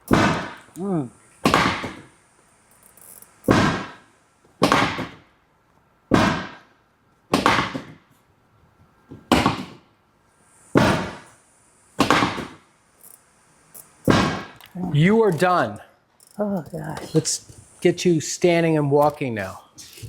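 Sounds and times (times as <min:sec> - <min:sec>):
table sections thumping down: 0:00.0 - 0:00.7, 0:01.4 - 0:02.1, 0:03.4 - 0:04.0, 0:06.1 - 0:06.6, 0:07.3 - 0:08.0, 0:09.1 - 0:09.8, 0:10.8 - 0:11.3, 0:14.0 - 0:15.8.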